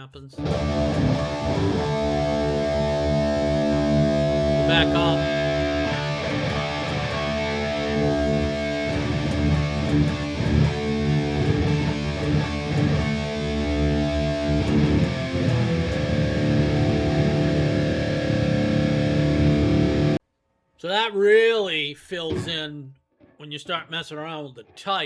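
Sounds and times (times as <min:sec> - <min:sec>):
electric guitar strummed chords: 0:00.4 - 0:20.2.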